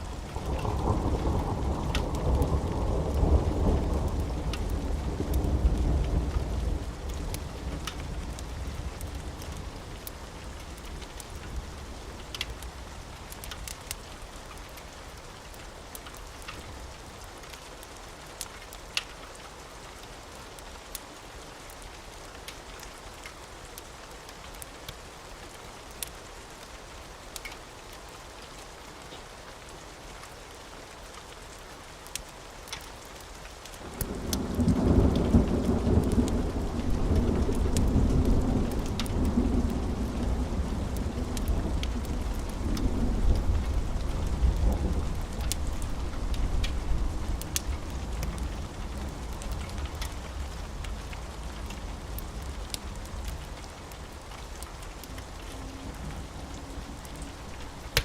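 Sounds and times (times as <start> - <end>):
steady rain: 0.0 - 58.0
wood fire crackling: 0.0 - 58.0
rolling thunder rumble: 0.1 - 10.4, 33.8 - 58.0.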